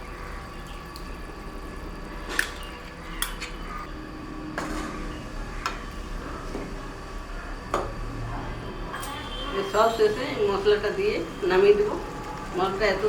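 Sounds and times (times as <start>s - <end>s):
utensil clinking and scraping a pot: 2.2s - 3.9s.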